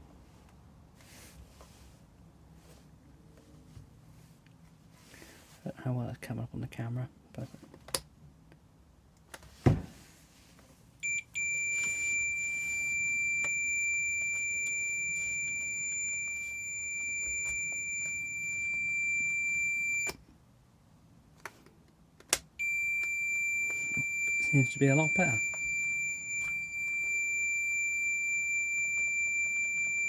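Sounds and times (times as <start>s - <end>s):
multimeter high-pitched beep: 11.0s - 20.2s, 22.6s - 30.0s.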